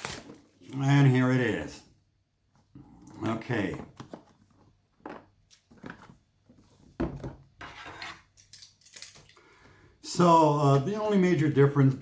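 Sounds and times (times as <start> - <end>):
packaging rustling: 0.0 - 0.8.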